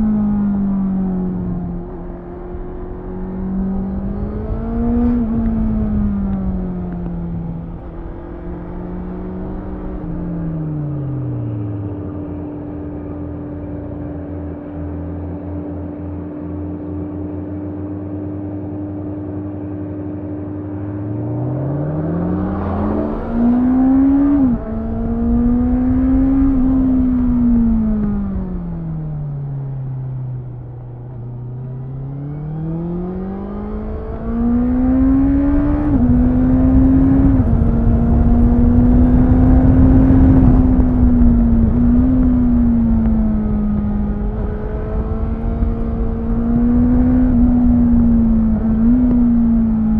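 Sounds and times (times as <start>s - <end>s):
motorcycle engine revving: 0.0s - 13.9s, 19.4s - 49.9s
wind noise: 21.0s - 49.9s.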